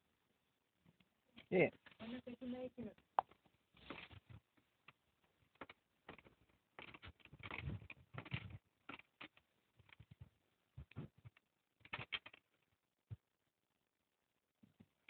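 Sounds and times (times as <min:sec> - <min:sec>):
faint clicks and knocks: 0:02.9 - 0:13.3.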